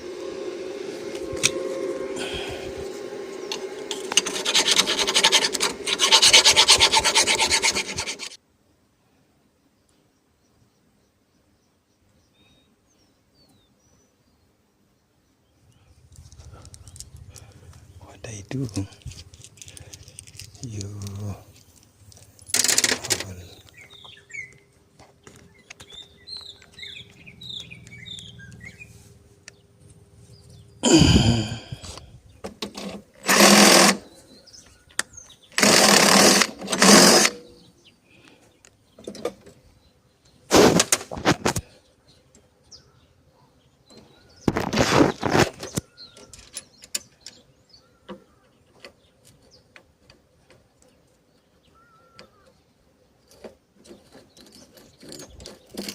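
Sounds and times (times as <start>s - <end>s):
steady hum: 0.0s - 8.4s
hand tool scraping: 0.5s - 8.4s, 18.6s - 23.7s, 32.6s - 34.1s, 35.6s - 37.5s, 53.4s - 55.9s
small birds chirping: 9.6s - 22.5s, 23.2s - 32.6s, 34.0s - 35.6s, 37.4s - 40.5s, 41.5s - 55.9s.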